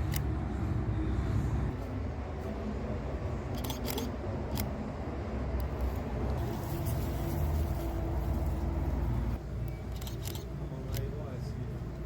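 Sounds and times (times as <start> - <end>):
camera shutter clicks: 3.6 - 4.7.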